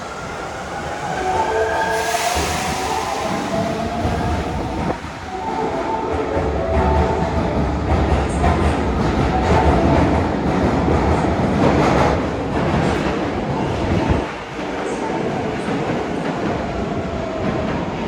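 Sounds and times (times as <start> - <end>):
subway train rumbling: 0.0 - 18.0.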